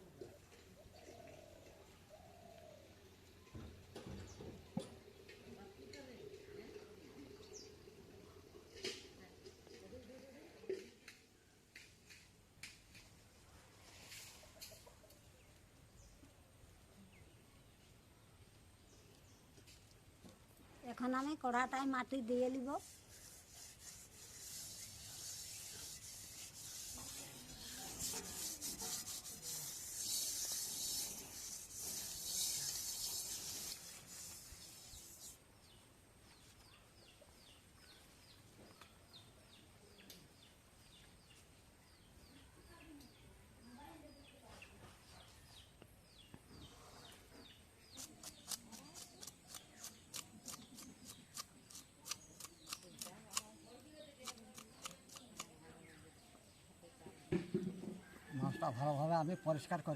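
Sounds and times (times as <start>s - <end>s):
mud scraping over a wok: 22.6s - 35.4s.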